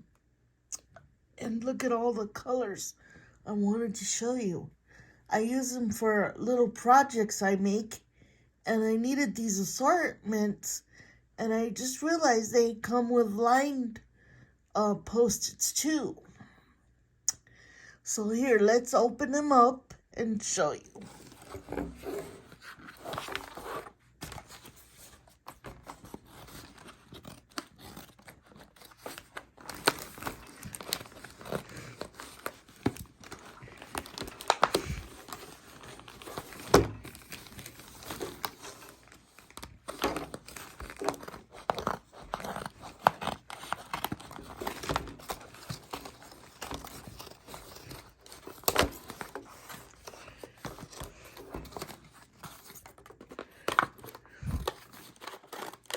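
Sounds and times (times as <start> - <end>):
packaging tearing and crinkling: 21.0 - 55.9.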